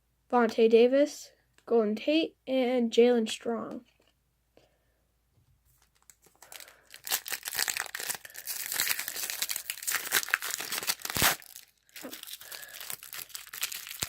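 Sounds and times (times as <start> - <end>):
foil wrapper crinkling: 5.7 - 14.0.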